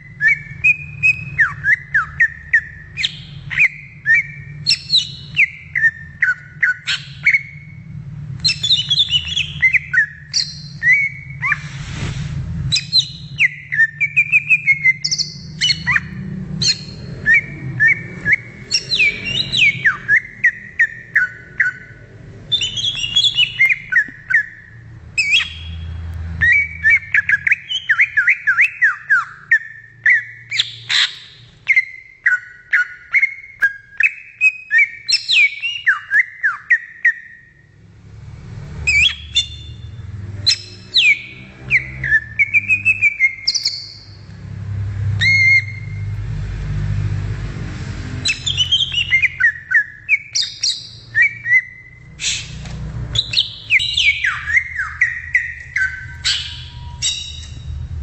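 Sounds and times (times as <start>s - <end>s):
bird singing chirps and whistles: 0.0s - 11.7s, 12.6s - 37.7s, 38.9s - 44.2s, 45.2s - 46.1s, 48.2s - 57.9s
steady low hum: 0.0s - 27.6s, 51.0s - 58.0s
brief rush of noise: 11.4s - 12.6s.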